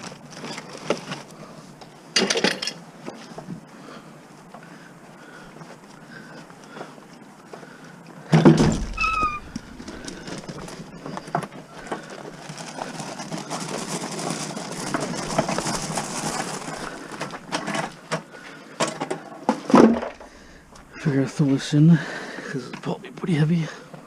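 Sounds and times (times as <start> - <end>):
metal rattling and scraping: 8.4 - 18.2.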